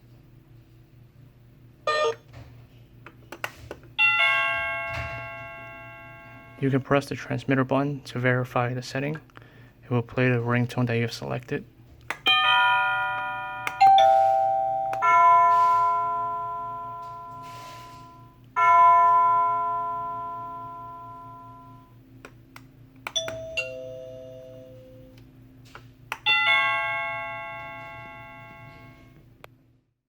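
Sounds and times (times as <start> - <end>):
doorbell chime strikes: 4.0 - 6.6, 12.3 - 21.9, 23.2 - 25.1, 26.3 - 29.2
steady low hum: 5.3 - 29.7
lower two-note chime: 13.1 - 18.3.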